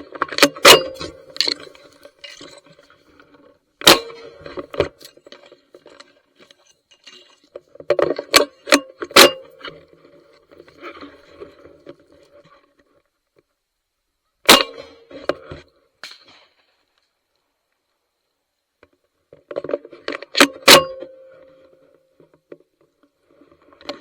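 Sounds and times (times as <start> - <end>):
shotgun blasts: 14.5 - 15.0.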